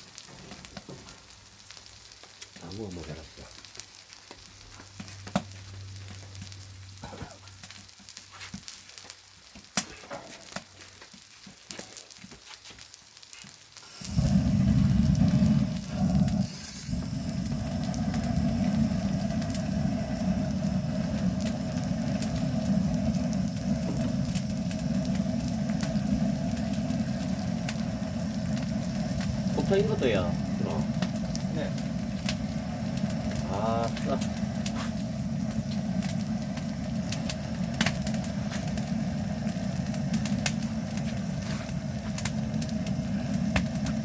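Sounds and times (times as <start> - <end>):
fire crackling pops: 0.0 - 44.0
meat sizzling: 0.0 - 44.0
loud low hum: 14.1 - 44.0.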